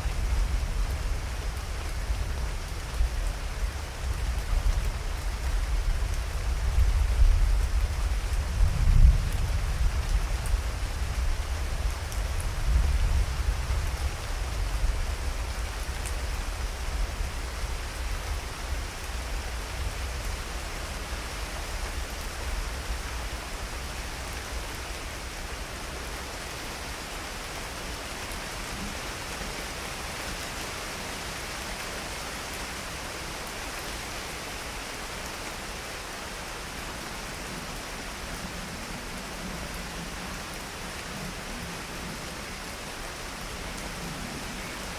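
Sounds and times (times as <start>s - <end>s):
low rumble of thunder: 0.0s - 20.3s
steady rain falling: 0.0s - 44.9s.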